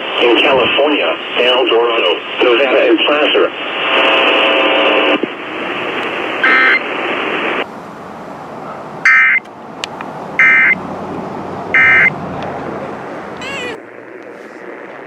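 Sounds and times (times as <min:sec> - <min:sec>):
radio static hiss: 0:00.0 - 0:08.0, 0:13.4 - 0:15.0
two-tone digital data bursts: 0:06.4 - 0:06.8, 0:10.4 - 0:10.8, 0:11.8 - 0:12.1.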